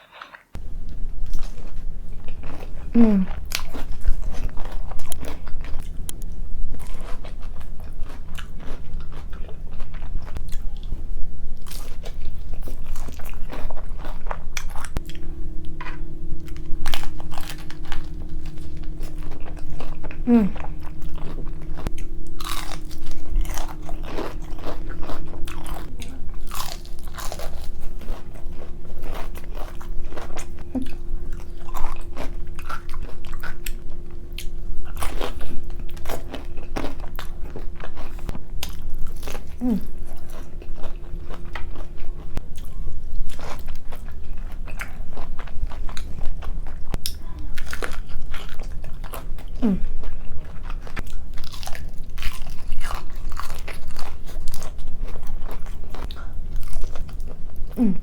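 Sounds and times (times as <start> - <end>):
wet chewing: 11.6 - 58.0.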